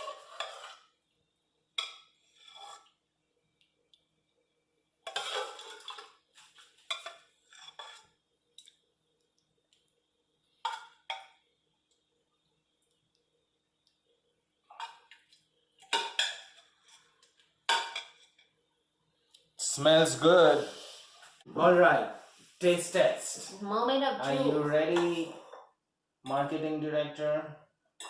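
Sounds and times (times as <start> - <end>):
spoon scraping a pot: 0.0 - 1.0, 1.8 - 3.0, 5.0 - 8.2.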